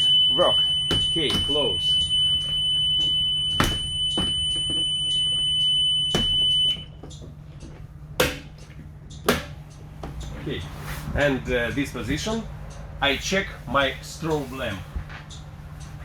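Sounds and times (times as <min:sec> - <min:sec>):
high-pitched alarm buzzing: 0:00.0 - 0:06.9
sharp knocks and clunks: 0:00.9 - 0:01.7, 0:06.1 - 0:10.4.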